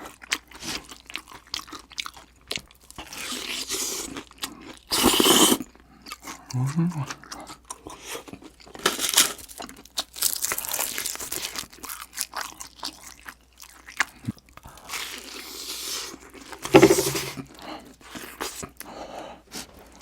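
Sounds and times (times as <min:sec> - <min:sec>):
crunchy chewing: 0:00.0 - 0:20.0.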